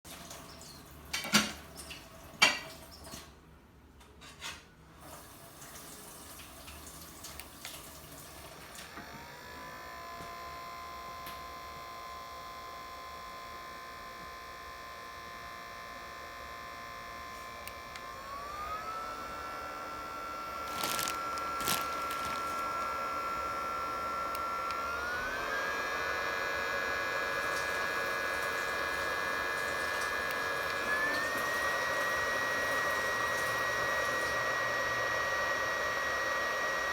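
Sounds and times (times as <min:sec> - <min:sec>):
stove fan whining: 0:08.4 - 0:36.9.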